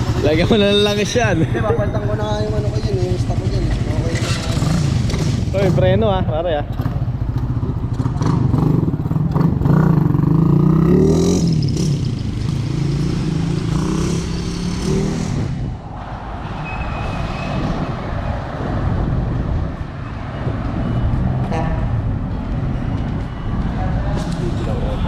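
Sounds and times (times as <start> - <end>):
traffic hum: 0.0 - 25.0
motorcycle engine revving: 2.2 - 15.7.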